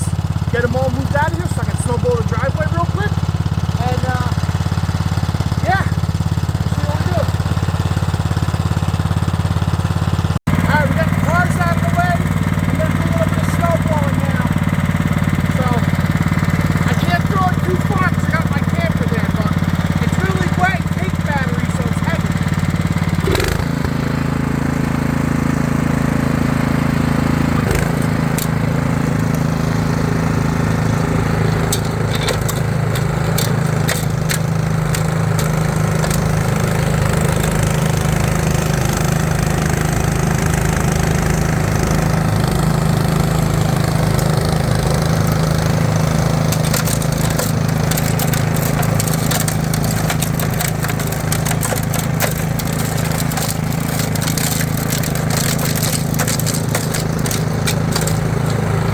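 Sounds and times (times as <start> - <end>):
snowblower engine running: 0.0 - 58.9
sharp clicks and crackles: 23.0 - 24.0, 27.6 - 28.6, 31.6 - 37.9, 43.7 - 58.9.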